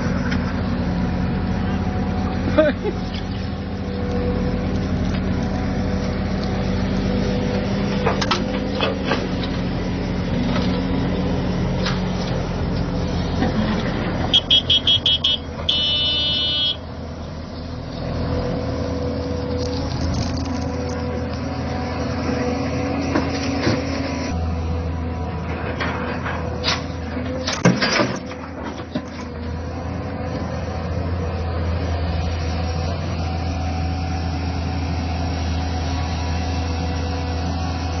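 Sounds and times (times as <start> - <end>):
diesel engines running: 0.0 - 38.0
high-pitched vehicle horn beeping: 14.3 - 16.8.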